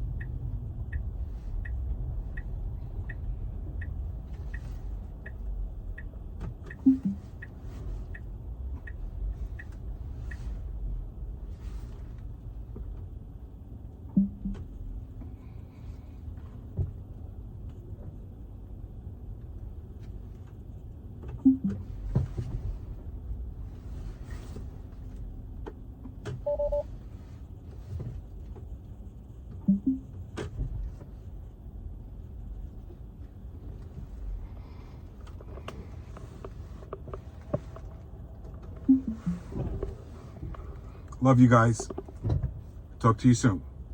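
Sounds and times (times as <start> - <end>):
car cabin rumble: 0.0 - 43.9
knocks and clicks: 14.1 - 14.7, 29.7 - 30.1
two-note tone: 21.5 - 21.8, 26.5 - 26.8.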